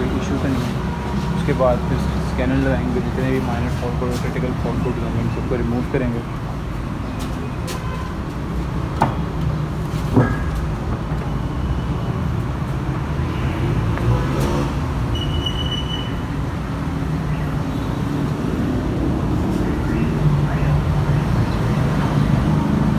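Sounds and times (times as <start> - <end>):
road traffic rumble: 0.0 - 22.9
sharp knocks: 9.0 - 9.4, 10.0 - 11.4.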